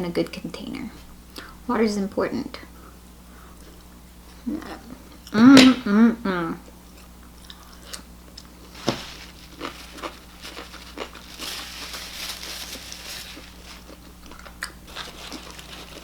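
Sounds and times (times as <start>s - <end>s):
snack packaging crinkling: 7.5s - 16.0s.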